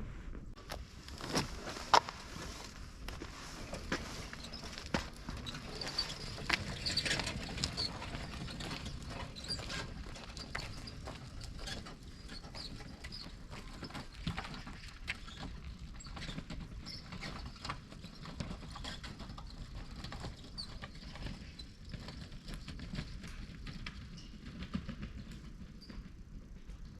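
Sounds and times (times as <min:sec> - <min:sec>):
low rumble of fire: 0:00.0 - 0:18.2.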